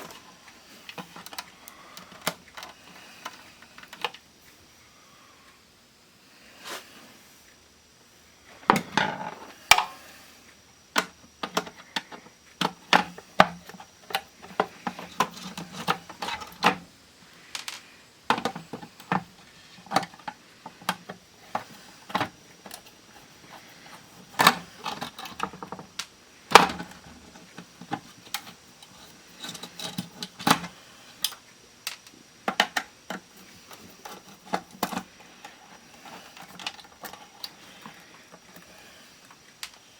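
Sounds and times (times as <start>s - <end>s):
small tools clattering: 11.0s - 39.9s.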